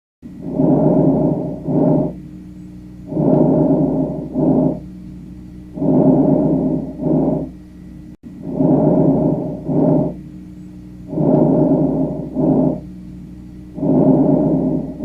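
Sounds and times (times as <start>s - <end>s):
lung breath sounds: 0.3s - 2.2s, 3.0s - 4.9s, 5.7s - 7.6s, 8.4s - 10.2s, 11.0s - 12.9s, 13.7s - 15.0s.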